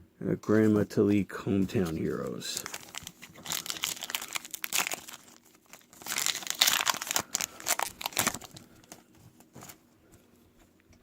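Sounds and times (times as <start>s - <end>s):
plastic wrapper crinkling and tearing: 1.8s - 9.8s.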